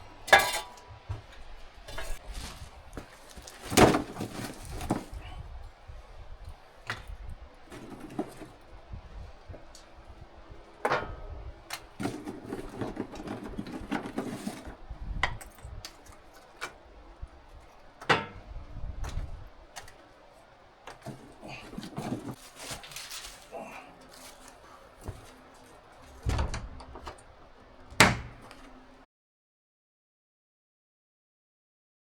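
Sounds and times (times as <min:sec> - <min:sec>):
knocks and clatters of handling: 0:00.0 - 0:05.4, 0:06.8 - 0:08.7, 0:10.7 - 0:16.9, 0:17.5 - 0:20.1, 0:20.9 - 0:29.0.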